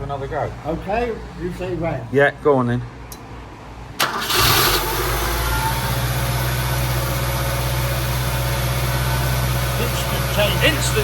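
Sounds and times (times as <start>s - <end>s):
car engine starting and idling: 3.8s - 11.0s.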